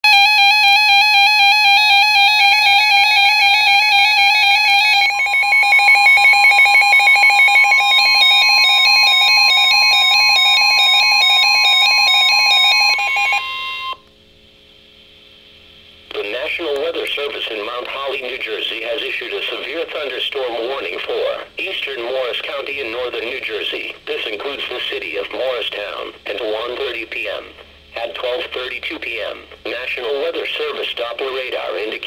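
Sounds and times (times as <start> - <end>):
fast-warbling alert tone: 2.2 - 14.0.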